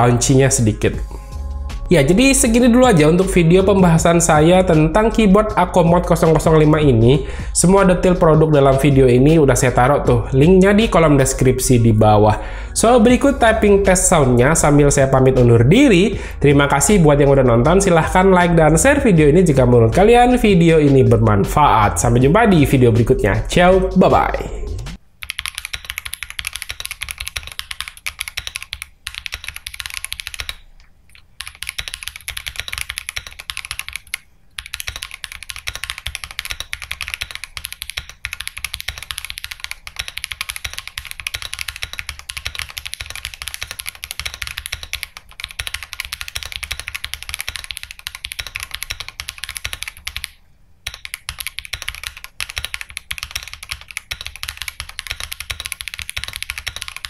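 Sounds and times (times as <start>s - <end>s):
mechanical keyboard typing: 2.4s - 6.8s, 25.2s - 57.0s.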